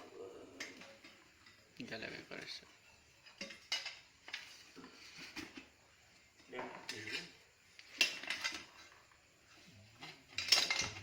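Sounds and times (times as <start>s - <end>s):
metal tools clinking and rattling: 6.7s - 9.1s, 9.9s - 11.0s.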